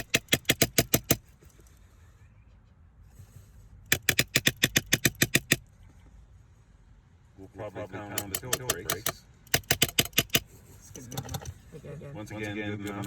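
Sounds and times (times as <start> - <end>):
ratchet wrench clicking: 0.0 - 1.2, 3.9 - 5.6, 8.2 - 11.5.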